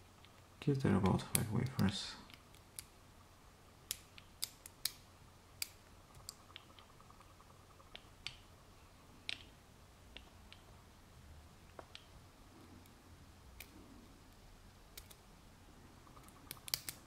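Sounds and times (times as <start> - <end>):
lock pick metallic clicks: 16.2 - 17.0.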